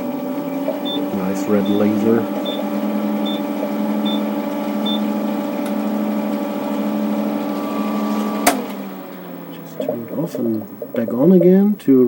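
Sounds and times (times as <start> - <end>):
water pump humming: 0.0 - 12.0
short high beep: 0.9 - 2.6, 4.0 - 4.2.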